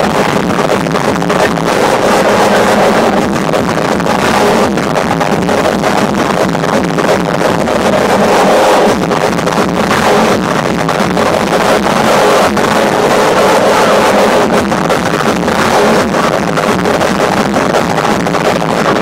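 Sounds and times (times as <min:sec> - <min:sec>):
distorted hardcore electronic music: 0:00.0 - 0:19.0.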